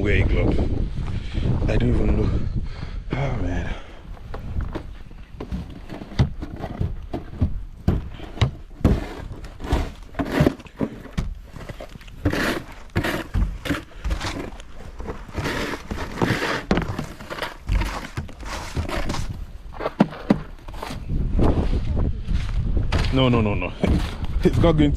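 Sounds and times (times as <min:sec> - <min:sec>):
crunching and scraping in snow: 0:04.5 - 0:24.9.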